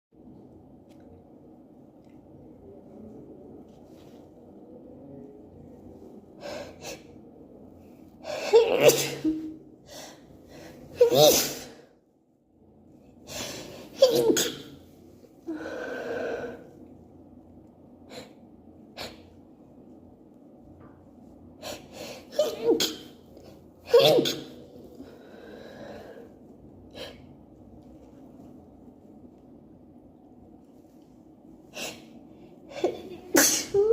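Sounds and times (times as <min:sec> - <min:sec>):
woman sneezing: 0:08.3 - 0:09.6, 0:11.0 - 0:11.8, 0:13.9 - 0:14.8, 0:22.2 - 0:23.2, 0:23.9 - 0:24.6, 0:32.7 - 0:33.9.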